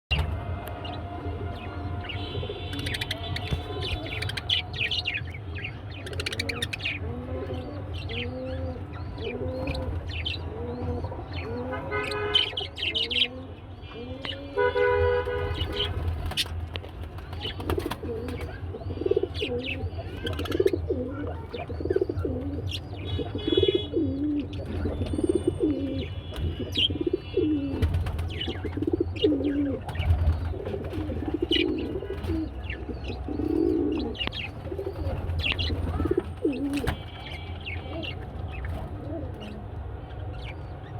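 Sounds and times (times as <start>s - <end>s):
small birds chirping: 2.0s - 14.6s, 15.5s - 40.9s
doves cooing: 6.2s - 12.0s, 18.0s - 37.1s.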